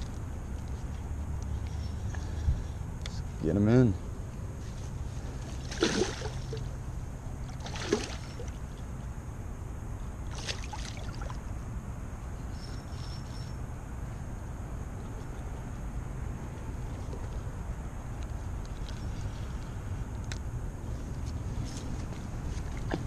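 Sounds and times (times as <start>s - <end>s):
low machinery hum: 0.0s - 23.0s
fish splashing in water: 5.5s - 6.7s, 7.4s - 8.7s, 10.3s - 11.4s.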